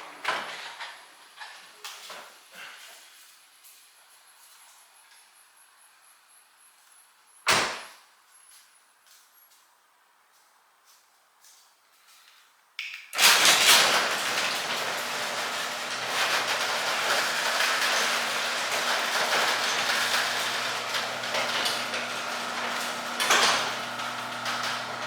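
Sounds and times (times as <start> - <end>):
garage door motor hum: 13.2 - 25.0
garage door rattling: 13.2 - 25.0.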